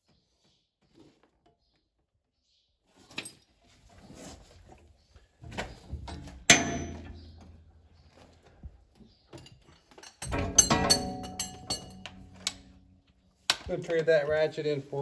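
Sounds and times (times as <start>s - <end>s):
metal clinks and knocks: 6.1s - 8.5s, 9.3s - 13.6s
ringing metallic clank: 6.5s - 7.9s, 10.2s - 13.1s.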